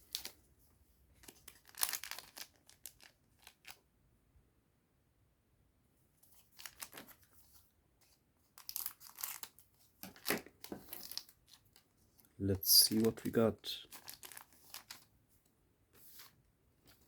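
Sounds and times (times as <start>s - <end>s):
foil pack crinkling and tearing: 1.2s - 3.8s, 6.6s - 7.2s, 8.6s - 11.8s, 13.8s - 15.1s.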